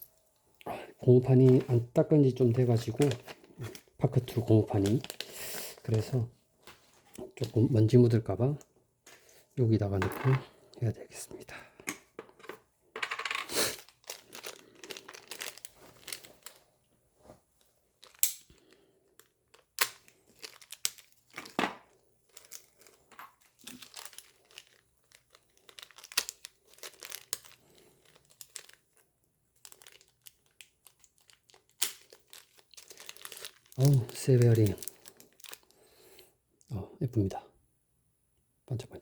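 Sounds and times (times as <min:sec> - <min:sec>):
plastic packaging crinkling: 0:01.2 - 0:06.3, 0:13.5 - 0:16.7, 0:17.5 - 0:36.0.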